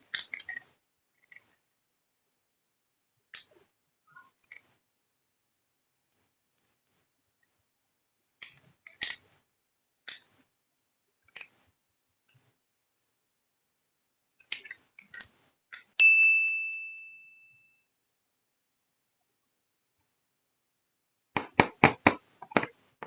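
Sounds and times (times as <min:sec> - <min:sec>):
plastic toy pieces clicking: 0:00.0 - 0:01.6, 0:04.4 - 0:04.8, 0:08.4 - 0:09.4, 0:10.0 - 0:10.4, 0:11.2 - 0:11.6, 0:14.4 - 0:15.9
bright ding: 0:16.0 - 0:17.8.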